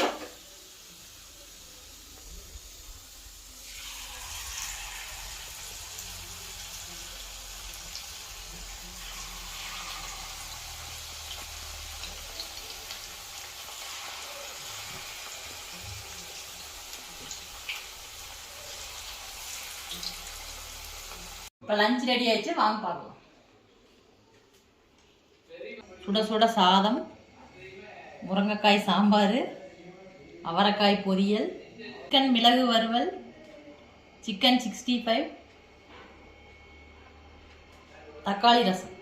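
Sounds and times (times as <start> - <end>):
food deep-frying in hot oil: 0.0 - 21.5.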